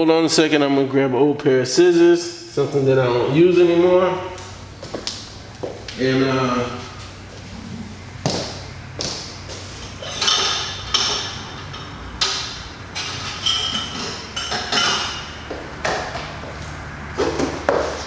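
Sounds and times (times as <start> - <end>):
metal tools clinking and clattering: 9.8 - 16.1.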